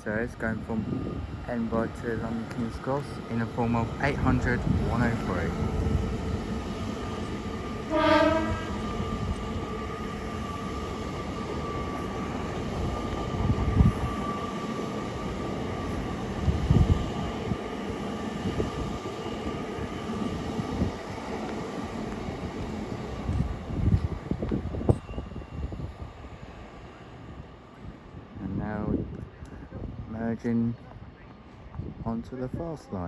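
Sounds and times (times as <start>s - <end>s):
train rumble with whine: 0.0s - 32.9s
train horn blast: 7.8s - 9.0s.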